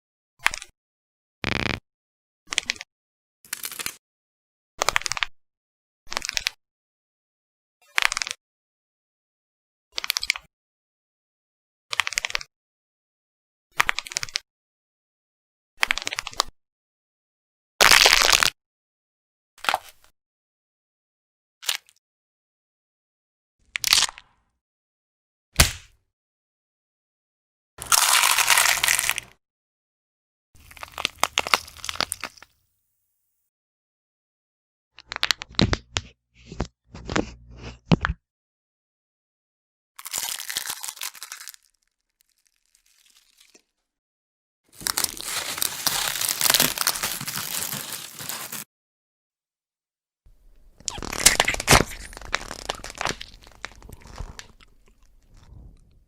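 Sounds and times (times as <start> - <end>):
bone cracking: 27.8 - 29.3, 44.8 - 48.6, 50.8 - 55.0
bone crunching: 27.8 - 29.3, 44.8 - 48.6.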